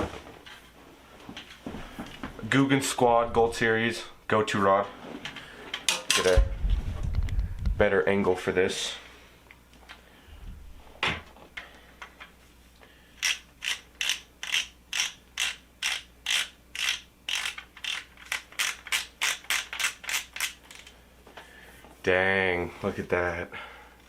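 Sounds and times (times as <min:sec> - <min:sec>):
fishing reel ratcheting clicks: 0:13.2 - 0:20.9.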